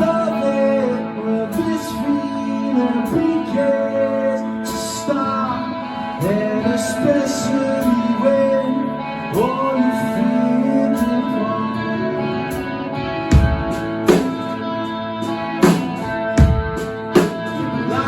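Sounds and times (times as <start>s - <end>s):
guitar: 0.0s - 18.0s
person singing: 0.0s - 18.0s
heavy drum hit: 13.3s - 14.5s, 15.6s - 17.4s.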